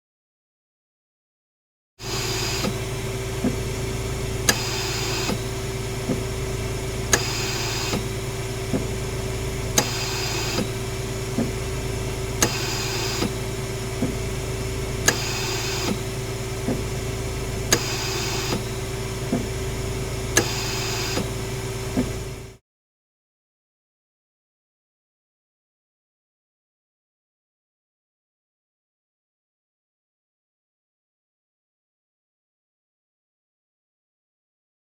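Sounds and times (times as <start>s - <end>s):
ventilator hiss: 2.0s - 22.5s
ventilator hum: 2.0s - 22.6s
ventilator valve clicks: 7.0s - 22.4s.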